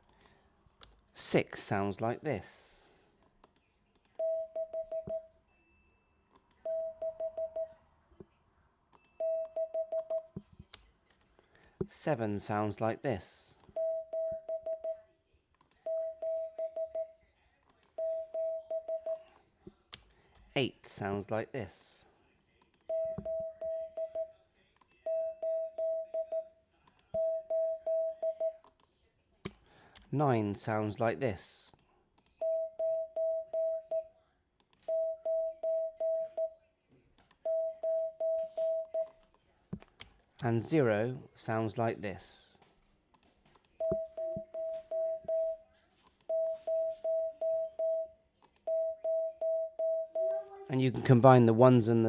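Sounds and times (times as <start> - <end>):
morse code beeps: 4.2 - 6.0, 9.0 - 10.3, 13.8 - 15.0, 15.9 - 17.2, 18.0 - 19.2, 22.9 - 24.3, 27.2 - 28.6, 37.5 - 39.2, 43.8 - 45.6, 46.3 - 50.4.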